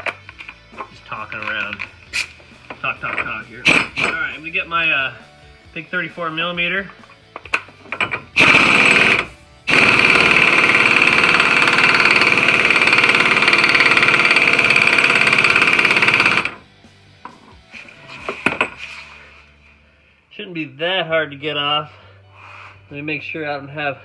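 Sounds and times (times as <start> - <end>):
impact wrench hammering: 3.1 - 4.2, 7.4 - 16.6.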